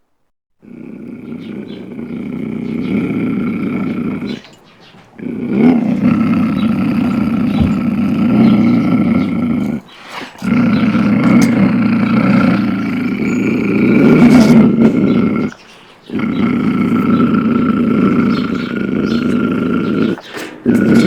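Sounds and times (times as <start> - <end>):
low rough beast growl: 0.6 - 21.0.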